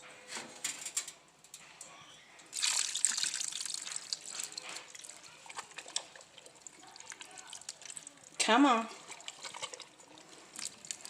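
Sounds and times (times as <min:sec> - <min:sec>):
liquid dripping: 0:02.5 - 0:11.0
soup pouring into a pot: 0:02.5 - 0:11.0.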